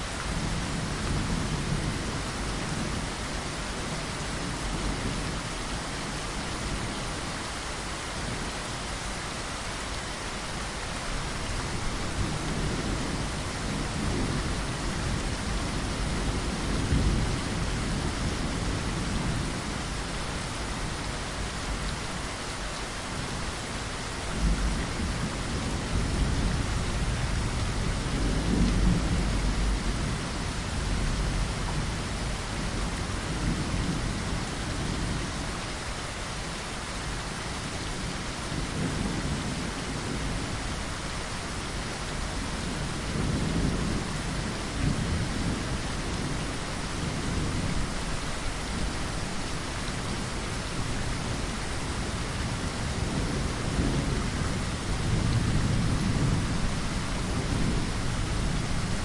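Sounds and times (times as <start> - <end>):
heavy rain on a window: 0.0 - 59.0.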